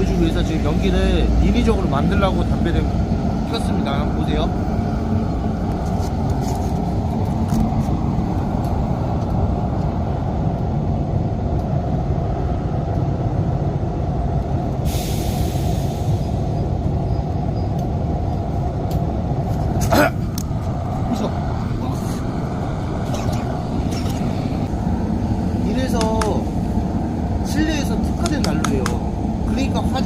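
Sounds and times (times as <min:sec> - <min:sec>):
short hiss: 0:14.8 - 0:16.3.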